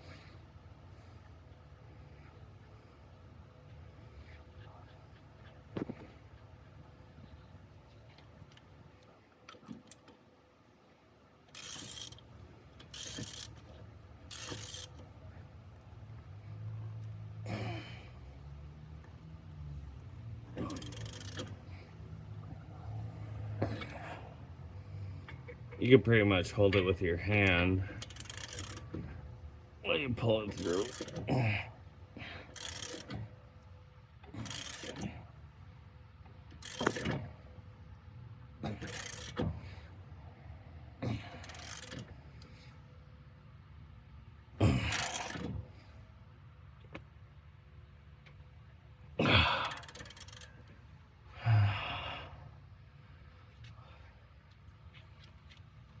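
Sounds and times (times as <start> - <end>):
low steady hum: 0.0 - 56.0
wrench clicking: 11.5 - 12.2, 12.8 - 13.6, 14.3 - 15.0, 20.6 - 21.6, 28.0 - 28.9, 30.5 - 31.2, 32.5 - 33.2, 34.4 - 35.1, 36.6 - 37.2, 38.8 - 39.4, 41.4 - 42.1, 44.9 - 45.5, 49.6 - 50.7.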